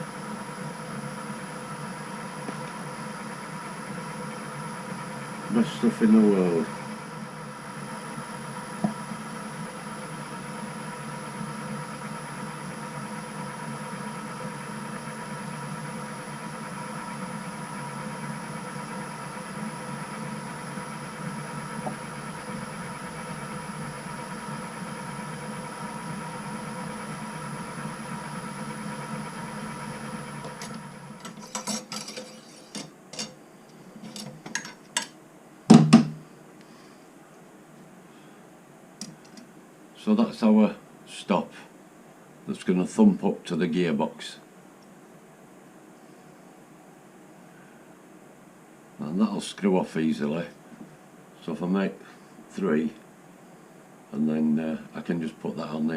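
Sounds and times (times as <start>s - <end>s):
metal lathe humming: 0.0s - 34.8s.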